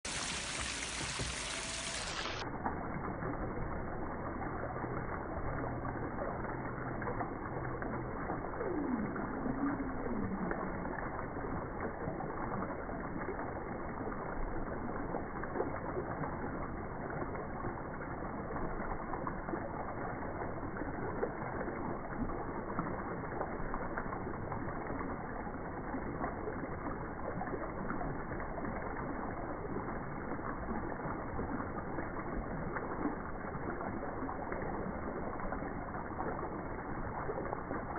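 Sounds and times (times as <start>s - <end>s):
waterfall rushing: 0.0s - 2.4s.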